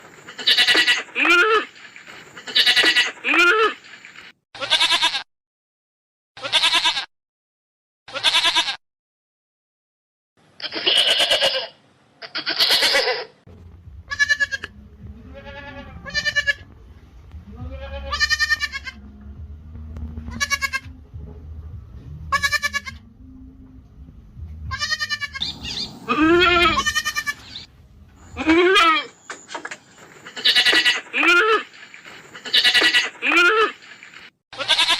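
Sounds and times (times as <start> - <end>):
goats bleating: 0.3 - 1.8, 2.4 - 3.8, 4.6 - 5.2, 6.4 - 7.1, 8.1 - 8.8, 10.6 - 13.3, 14.1 - 16.7, 17.5 - 19.0, 20.3 - 20.9, 22.3 - 23.0, 24.7 - 29.1, 30.2 - 31.8, 32.4 - 33.8, 34.6 - 34.9
low rumble: 13.5 - 17.8, 23.0 - 28.4.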